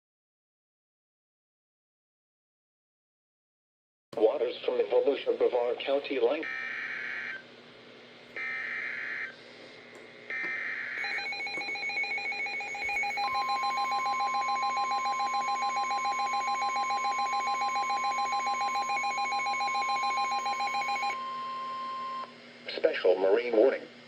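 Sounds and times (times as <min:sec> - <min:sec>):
steady warning alarm tone: 0:06.4 - 0:07.4, 0:08.4 - 0:09.4, 0:10.3 - 0:22.3.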